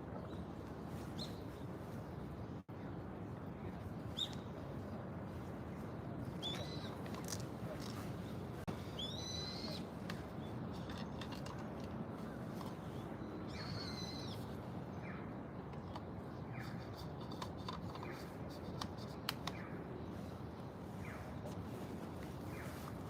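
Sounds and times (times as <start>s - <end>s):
drawn-out high bird calls: 8.8s - 10.8s, 13.4s - 15.4s.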